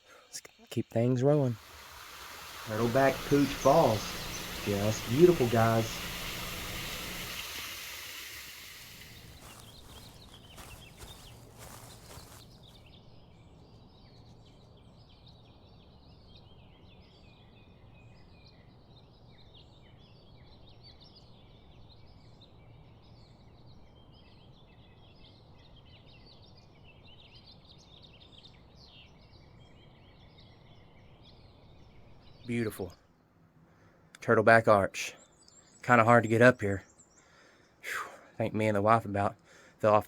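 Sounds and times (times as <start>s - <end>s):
small birds chirping and trilling: 0.0s - 40.0s
faint rushing background: 0.2s - 12.6s.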